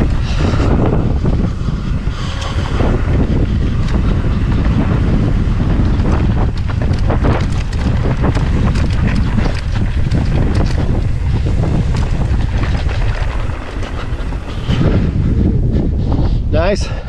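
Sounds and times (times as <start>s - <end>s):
wind buffeting microphone: 0.0s - 17.0s.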